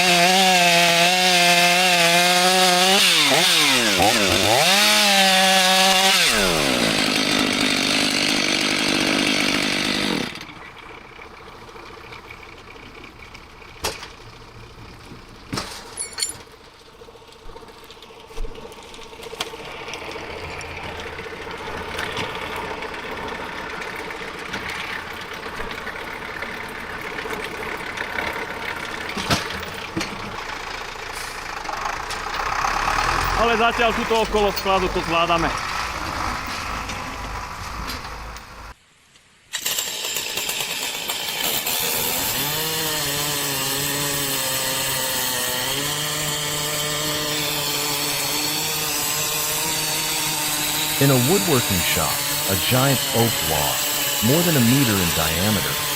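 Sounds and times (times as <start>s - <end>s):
chainsaw engine running: 0.0s - 12.5s, 18.0s - 35.7s, 39.6s - 55.9s.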